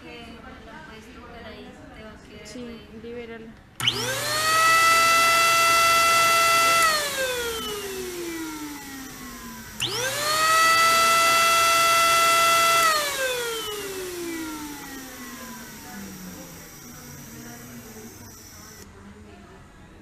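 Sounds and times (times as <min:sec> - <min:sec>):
ventilator blower whining: 0:03.8 - 0:18.9.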